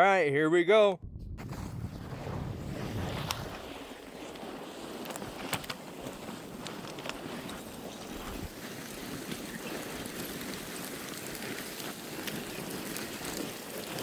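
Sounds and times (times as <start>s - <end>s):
dirt and gravel sliding: 1.4s - 14.0s
small stones ticking: 4.4s - 14.0s.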